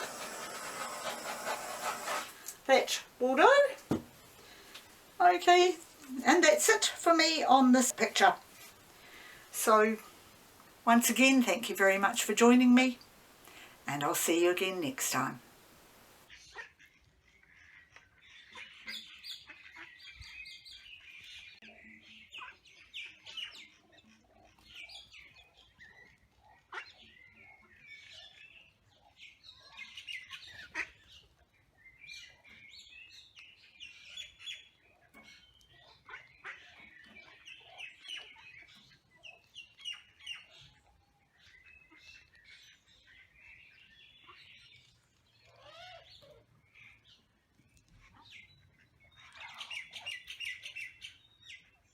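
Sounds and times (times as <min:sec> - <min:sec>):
small birds chirping: 0:17.4 - 0:51.9.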